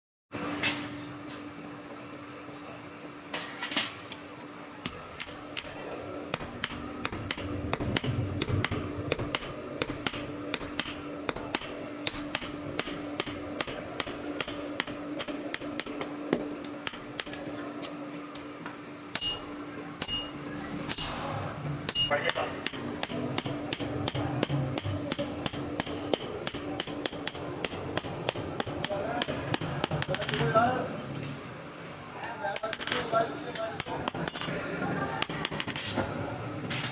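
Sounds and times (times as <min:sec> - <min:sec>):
steady hum: 0:00.4 - 0:36.8
hammer striking metal: 0:04.9 - 0:17.4, 0:19.1 - 0:21.3, 0:21.9 - 0:30.6.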